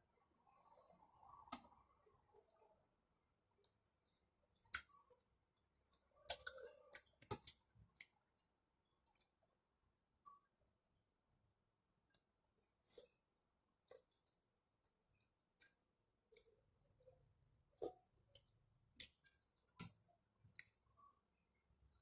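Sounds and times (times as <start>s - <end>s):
faint clicks and taps: 1.3s - 2.6s, 3.4s - 9.4s, 13.8s - 21.2s.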